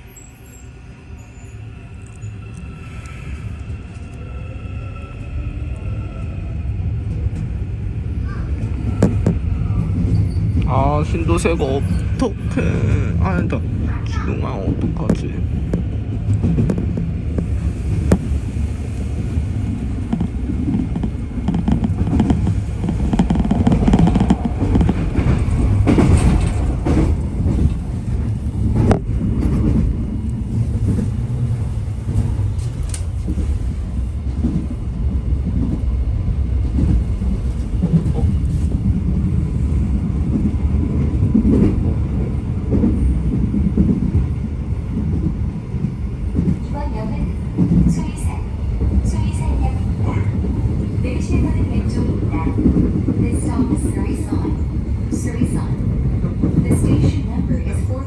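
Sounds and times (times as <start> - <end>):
train wheels rumbling on rail: 0.0 - 58.0.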